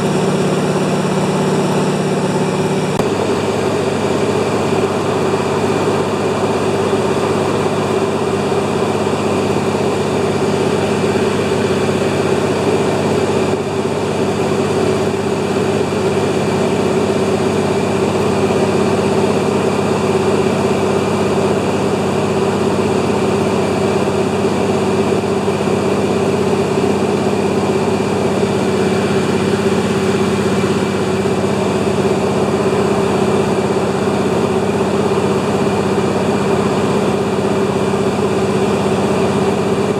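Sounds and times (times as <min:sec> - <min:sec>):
propeller plane engine drone: 0:00.0 - 0:39.9.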